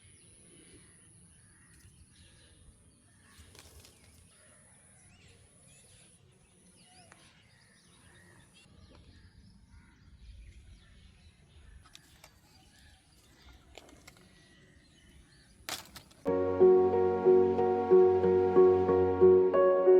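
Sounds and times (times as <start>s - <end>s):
music: 16.3s - 19.9s.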